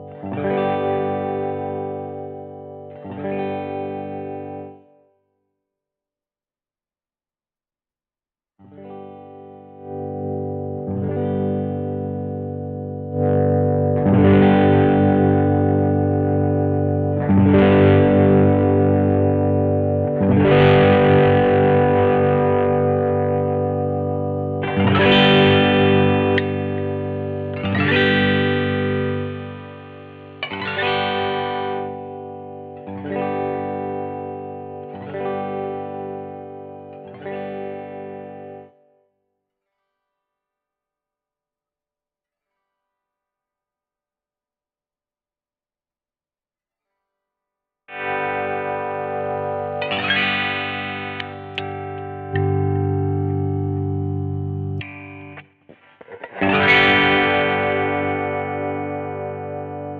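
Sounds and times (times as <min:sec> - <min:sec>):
electric guitar chords ringing: 0:00.0 - 0:05.1, 0:08.7 - 0:38.9, 0:47.9 - 0:59.9.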